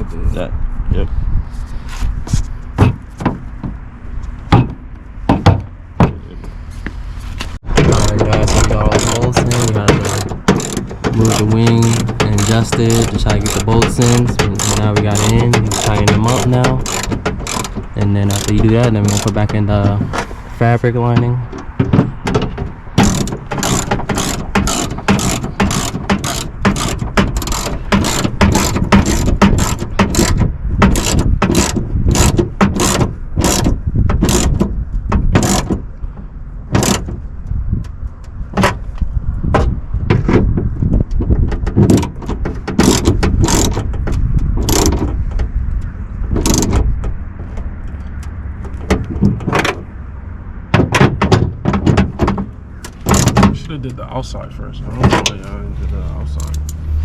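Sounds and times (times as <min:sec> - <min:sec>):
ratchet wrench clicking: 0:07.8 - 0:19.6, 0:23.0 - 0:34.6, 0:35.4 - 0:35.7, 0:42.8 - 0:43.8, 0:44.6 - 0:45.0, 0:46.4 - 0:46.8.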